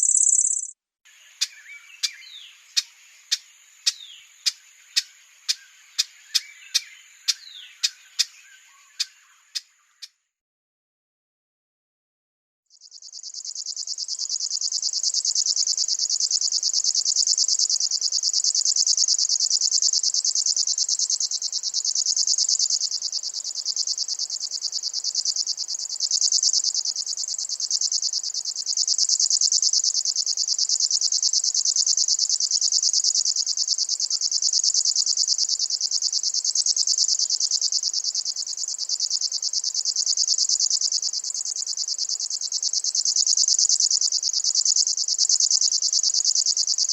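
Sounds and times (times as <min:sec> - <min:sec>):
warbler reeling trill: 0:00.0 - 0:00.7.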